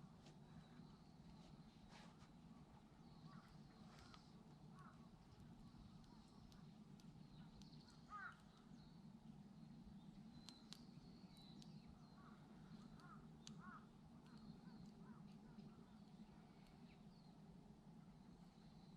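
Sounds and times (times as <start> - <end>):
faint crow caws: 3.2 - 5.1, 7.8 - 8.6, 12.0 - 15.7
light ticks: 3.3 - 8.7, 10.4 - 15.8, 16.6 - 16.8.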